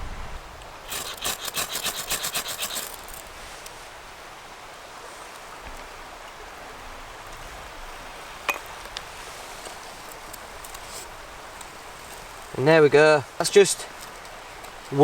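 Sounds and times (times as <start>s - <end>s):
steady outdoor hiss: 0.0s - 15.0s
faint ticks: 8.8s - 12.6s.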